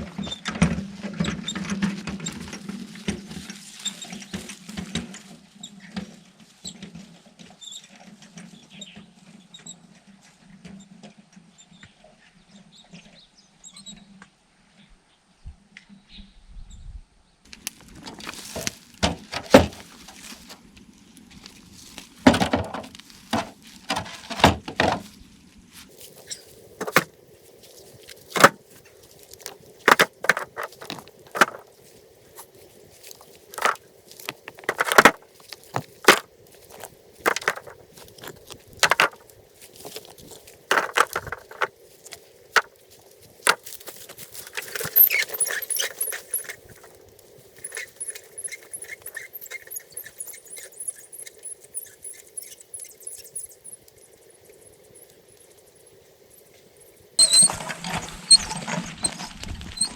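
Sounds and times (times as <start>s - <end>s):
fast high chirping: 47.6s - 55.9s.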